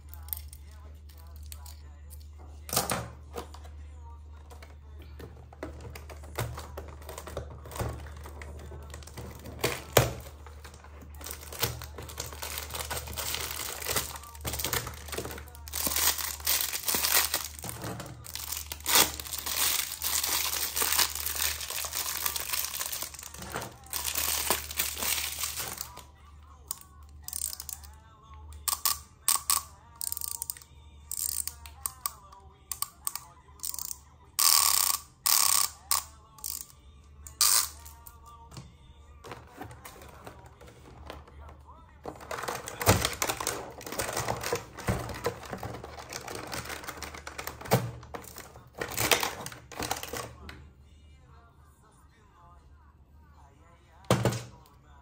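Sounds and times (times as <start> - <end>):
wrapping crinkling and tearing: 6.6 - 26.1, 42.2 - 50.2.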